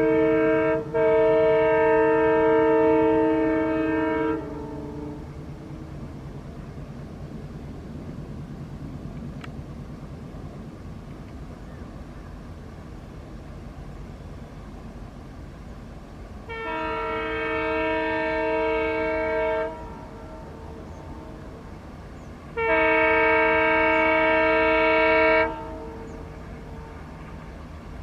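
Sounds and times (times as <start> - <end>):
locomotive air horn blast: 0.0 - 5.3, 16.4 - 21.8, 22.4 - 27.3
train rumbling: 0.0 - 28.0.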